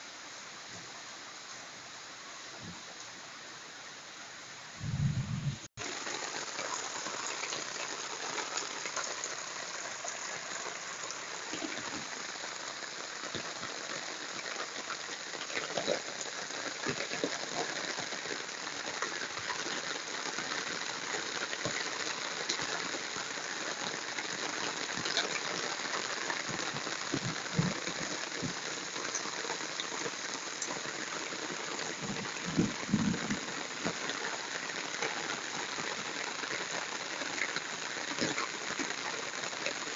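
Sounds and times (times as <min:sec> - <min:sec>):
heavy rain hissing: 0:00.0 - 0:39.9
low thumps: 0:04.8 - 0:05.7.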